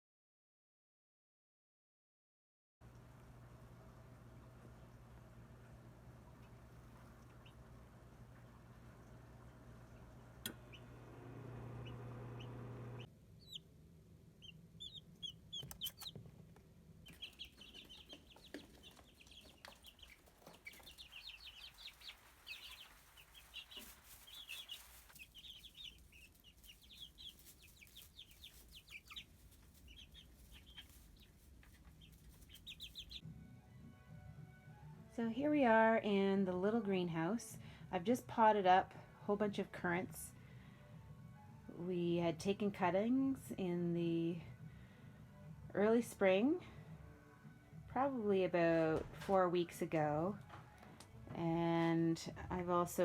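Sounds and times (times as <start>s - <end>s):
low steady hum: 2.8s - 21.0s
chicks peeping: 6.1s - 13.7s, 14.4s - 33.3s.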